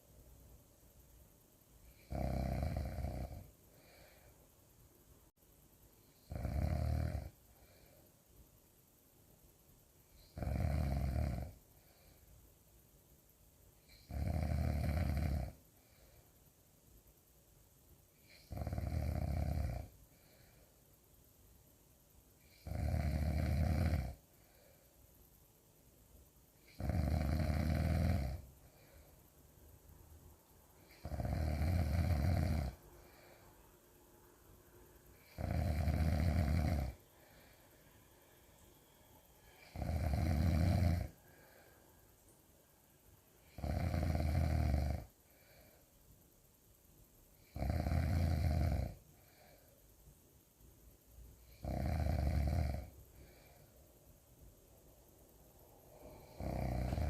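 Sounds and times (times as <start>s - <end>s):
loud snoring: 1.9s - 4.0s, 6.2s - 7.4s, 10.2s - 11.6s, 13.9s - 15.6s, 18.2s - 20.0s, 22.5s - 24.2s, 26.6s - 28.5s, 30.8s - 33.4s, 35.2s - 37.5s, 39.6s - 41.6s, 43.4s - 45.1s, 47.4s - 49.5s, 51.5s - 53.5s, 56.0s - 57.0s.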